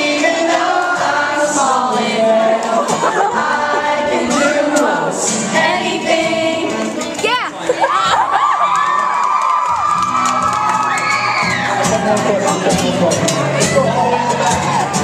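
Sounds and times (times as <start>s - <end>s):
crowd singing together: 0.0s - 8.2s.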